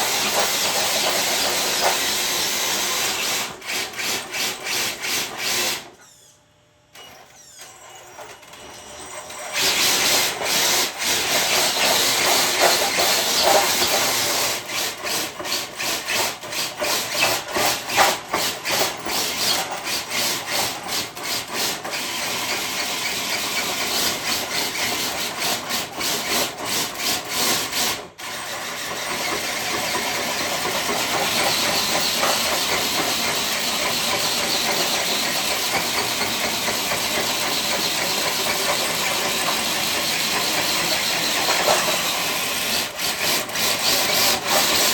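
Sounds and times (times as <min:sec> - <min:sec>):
toy truck drivetrain running: 0:00.0 - 0:06.0, 0:07.1 - 0:27.7, 0:28.4 - 0:44.9.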